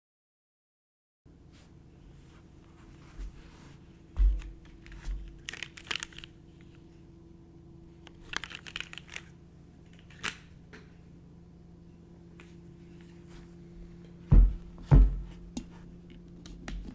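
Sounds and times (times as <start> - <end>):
faint steady hum: 1.3 - 16.9
low thumps: 14.3 - 15.6.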